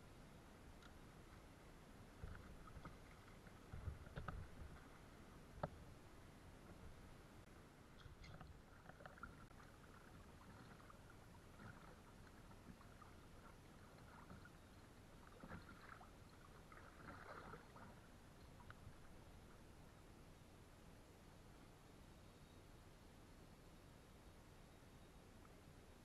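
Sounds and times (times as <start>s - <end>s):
kayak paddle splashing water: 8.3s - 18.2s.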